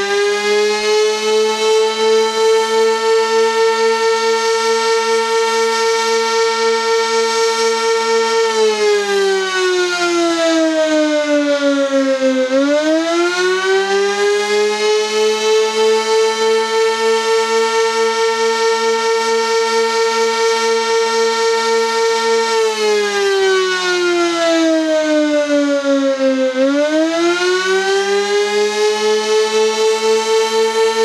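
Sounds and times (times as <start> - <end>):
warning siren wailing: 0.0 - 31.0.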